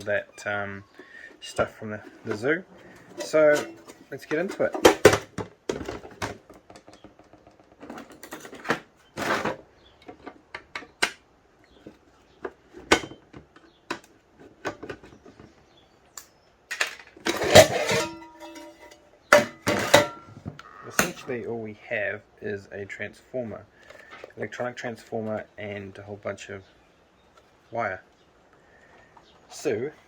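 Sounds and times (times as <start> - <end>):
metal scraping: 1.4 - 5.0, 17.2 - 21.4
metal box clicks and rattles: 2.2 - 11.2, 16.7 - 20.4.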